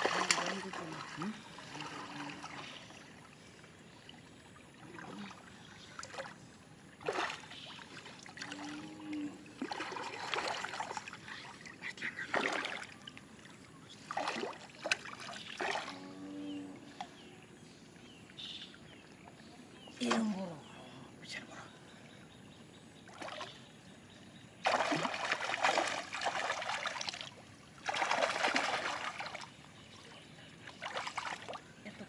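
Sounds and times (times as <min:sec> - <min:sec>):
water splashing in bursts: 0:00.0 - 0:02.6, 0:24.6 - 0:29.5
faint water trickle: 0:00.1 - 0:22.4, 0:28.6 - 0:32.0.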